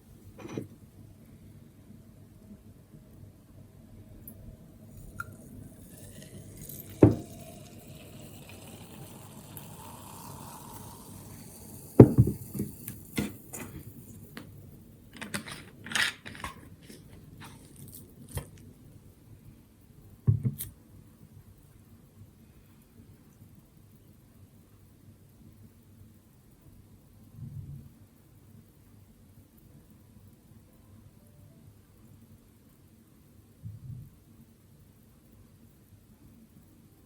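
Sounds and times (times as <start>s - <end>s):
gas hissing from bottle: 4.9s - 14.3s
bottle knocking on hard surface: 12.0s - 12.8s, 20.3s - 20.6s.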